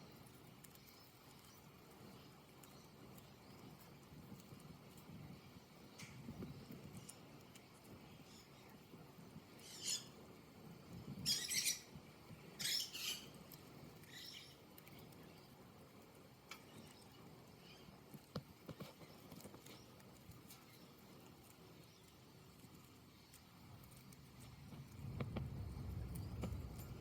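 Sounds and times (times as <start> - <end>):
faint clicks: 0.1 - 8.8, 13.4 - 27.0
budgerigars chirping: 11.3 - 11.9, 12.6 - 13.3.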